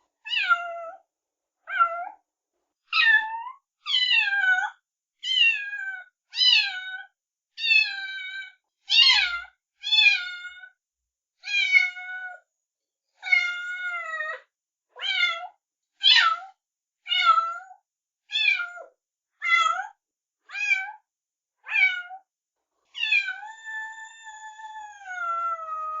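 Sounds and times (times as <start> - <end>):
kitten meowing: 21.7 - 22.2, 23.0 - 26.0.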